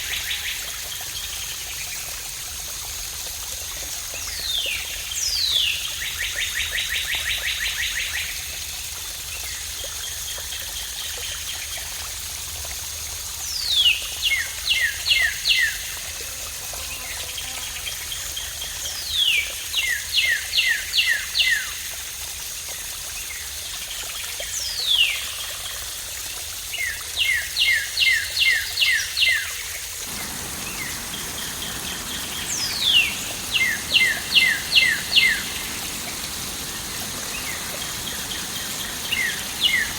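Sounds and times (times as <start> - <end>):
flowing water: 0.0 - 39.9
songbird singing: 30.0 - 39.9.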